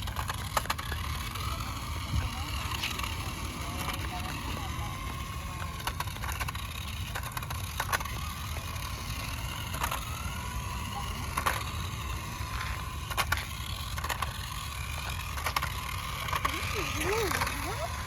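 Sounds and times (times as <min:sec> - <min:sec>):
toy car motor whine: 0:00.0 - 0:18.0.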